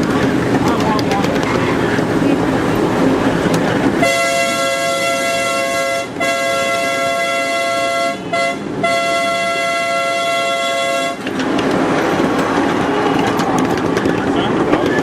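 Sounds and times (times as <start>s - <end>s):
train rushing past: 0.0s - 15.0s
train horn: 4.0s - 11.3s.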